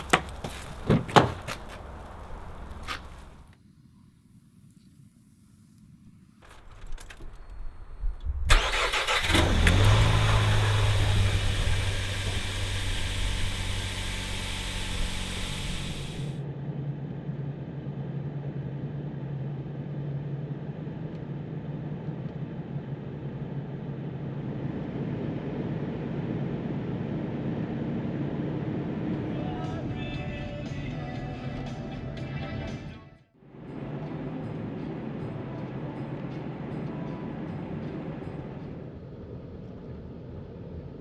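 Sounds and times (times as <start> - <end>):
clicks: 0.0 - 3.4
engine running: 0.0 - 3.5, 8.5 - 16.4
loud hiss: 8.6 - 16.4.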